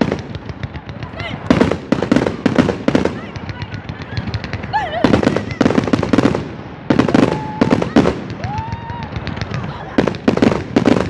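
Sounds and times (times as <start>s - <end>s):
fireworks crackling bangs: 0.0s - 11.0s
warbling firework whistle: 7.0s - 10.2s.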